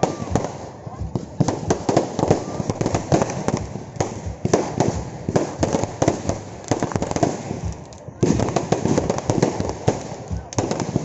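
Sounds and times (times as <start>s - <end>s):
sharp cracks and pops: 5.6s - 9.2s, 9.9s - 10.9s.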